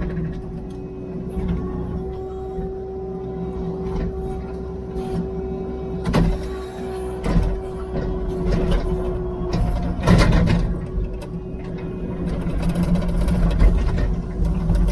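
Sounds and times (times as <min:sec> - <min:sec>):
clunks and rattles: 0:00.0 - 0:02.7, 0:06.0 - 0:14.9
diesel engine rumbling: 0:00.0 - 0:14.9
machine whine: 0:00.0 - 0:14.9.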